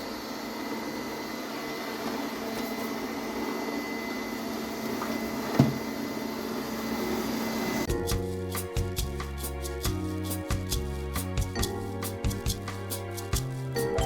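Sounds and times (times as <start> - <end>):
robot vacuum cleaner running: 0.0 - 7.9.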